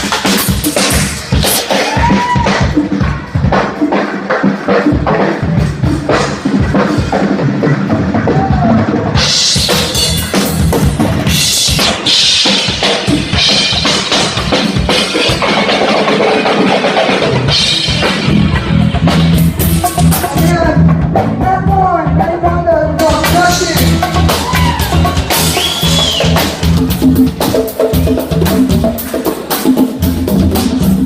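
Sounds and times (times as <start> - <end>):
blues band playing: 0.0 - 31.0
drum kit: 0.0 - 31.0.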